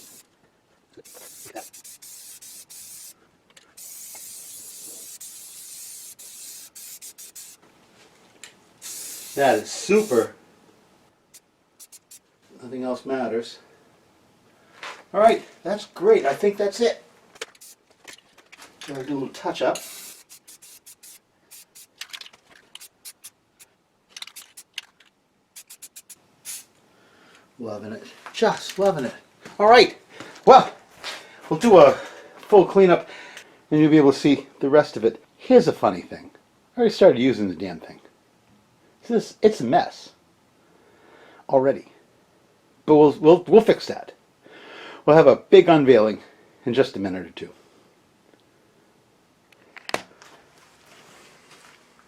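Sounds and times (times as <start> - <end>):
spray paint can hissing: 0.0 - 0.2, 1.0 - 3.2, 3.8 - 7.6, 8.8 - 10.3, 11.3 - 12.2, 17.5 - 17.8, 19.8 - 22.1, 22.7 - 23.4, 24.2 - 24.9, 25.6 - 26.7.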